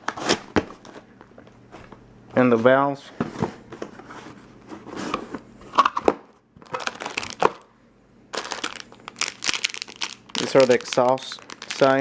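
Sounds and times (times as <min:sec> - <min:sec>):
packaging rustling and crinkling: 0:06.6 - 0:07.6, 0:08.3 - 0:12.0.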